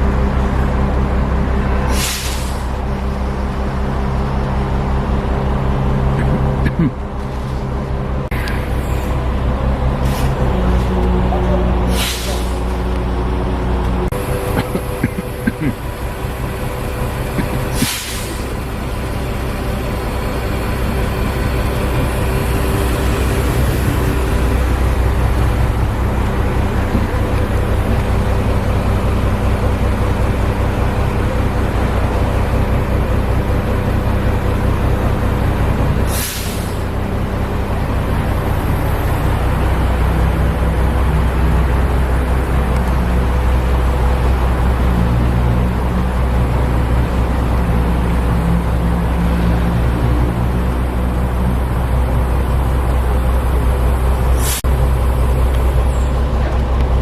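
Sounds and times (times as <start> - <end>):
heavy diesel engine running: 0.0 - 57.0
brief hisses: 1.9 - 2.7, 11.9 - 12.6, 17.8 - 18.4.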